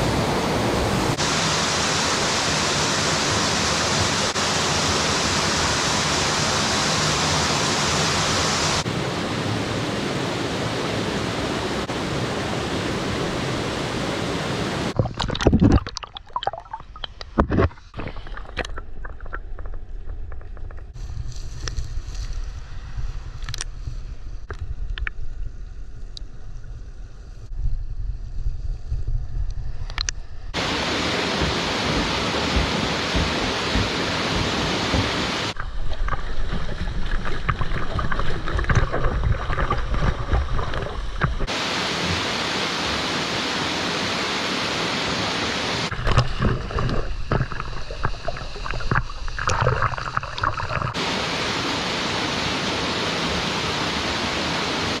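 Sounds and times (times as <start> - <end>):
waterfall roaring: 0.0 - 15.0, 30.6 - 35.6, 37.2 - 55.0
wind on microphone rumble: 18.0 - 41.5.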